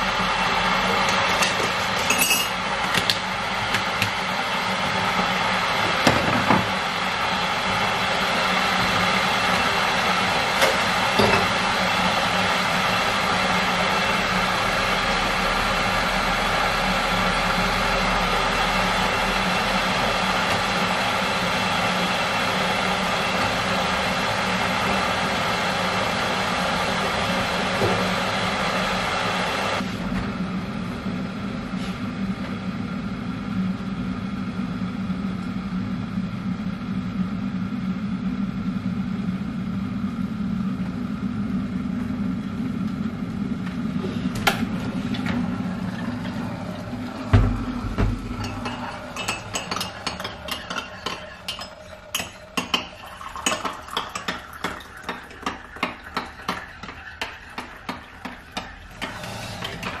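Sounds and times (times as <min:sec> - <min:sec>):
mechanical hum: 0:00.0 - 1:00.0
dishes and cutlery clattering: 0:01.1 - 0:02.6, 0:48.3 - 0:57.4
low thump: 0:47.3 - 0:48.2.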